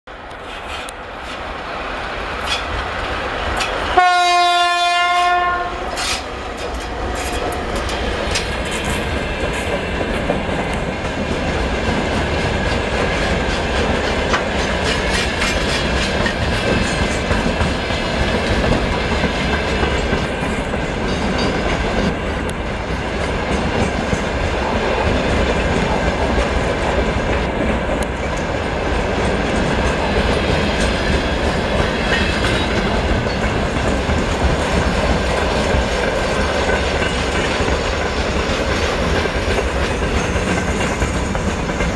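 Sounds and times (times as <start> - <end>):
freight train rumbling past: 0.1 - 41.9
wheels clicking over rail joints: 2.3 - 4.0, 4.6 - 41.9
locomotive horn blast: 3.9 - 6.2.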